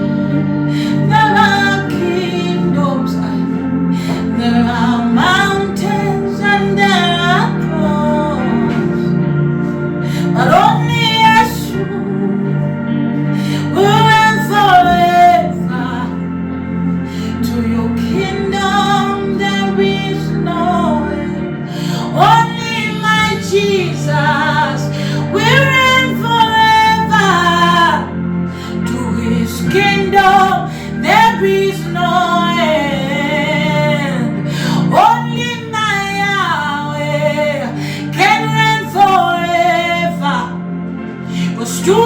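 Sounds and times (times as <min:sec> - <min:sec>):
sustained instrumental chords: 0:00.0 - 0:42.0
woman singing worship melody: 0:00.0 - 0:42.0.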